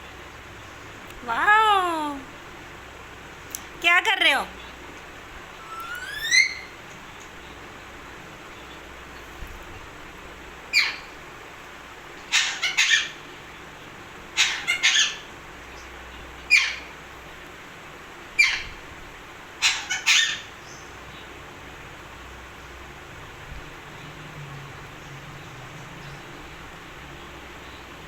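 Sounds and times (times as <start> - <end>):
parrot squawking: 5.6 - 6.8, 12.3 - 13.2, 14.4 - 15.3, 19.6 - 20.5.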